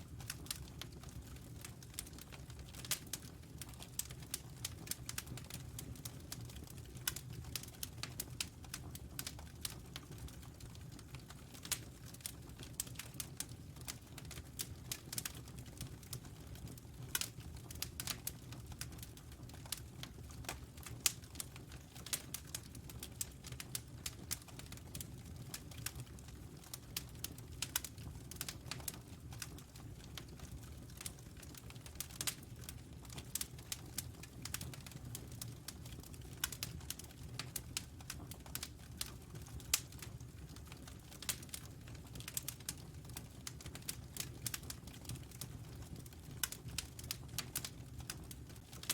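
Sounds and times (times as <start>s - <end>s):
wood fire crackling: 0.0s - 48.9s.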